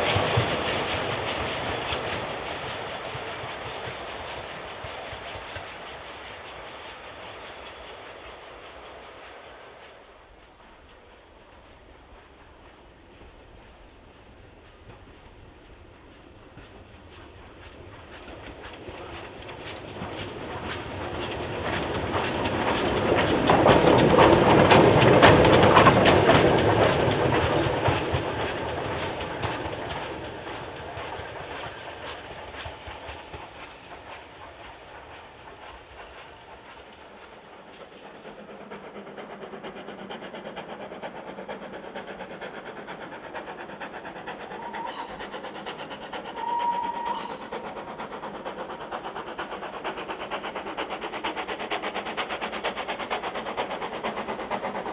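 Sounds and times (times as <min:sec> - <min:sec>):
steam train passing: 0:00.0 - 0:54.9
wheels clacking over rail joints: 0:16.5 - 0:37.2.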